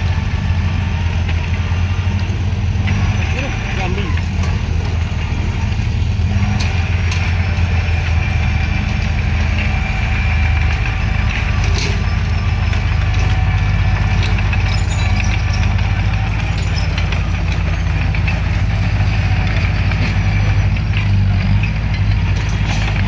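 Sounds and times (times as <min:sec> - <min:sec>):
bulldozer diesel engine humming: 0:00.0 - 0:23.0
light metal clanks: 0:14.0 - 0:17.7.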